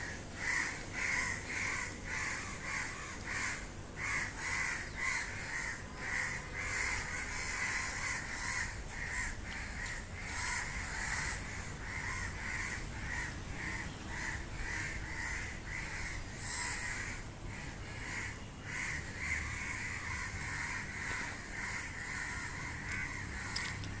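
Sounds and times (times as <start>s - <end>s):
crows cawing: 0.0s - 24.0s.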